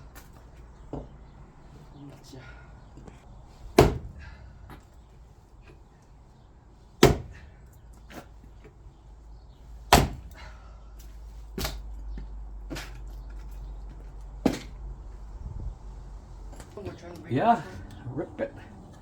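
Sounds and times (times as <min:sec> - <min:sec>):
axe chopping wood: 0:03.7 - 0:04.4, 0:07.0 - 0:08.3, 0:09.9 - 0:10.5, 0:11.5 - 0:11.9, 0:14.4 - 0:14.8.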